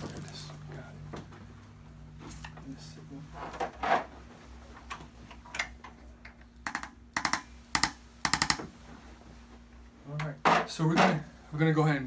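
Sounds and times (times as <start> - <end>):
sharp clicks: 6.7 - 8.6.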